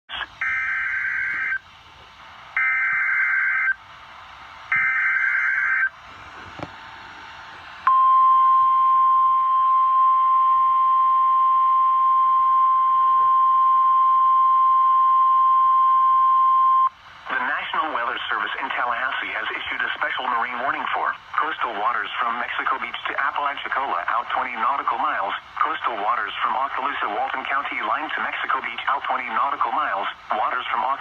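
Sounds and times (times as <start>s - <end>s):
radio hiss: 0.1s - 3.0s, 16.9s - 31.0s
steady warning alarm tone: 0.4s - 1.6s, 2.6s - 3.8s, 4.7s - 6.0s.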